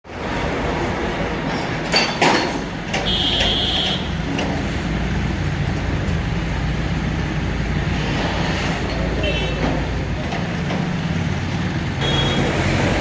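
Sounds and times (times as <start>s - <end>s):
crane diesel engine running: 2.7s - 13.0s.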